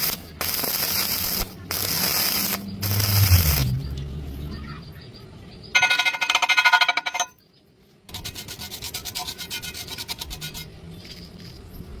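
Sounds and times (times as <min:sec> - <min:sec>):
rapid scraping strokes: 0:08.1 - 0:11.5.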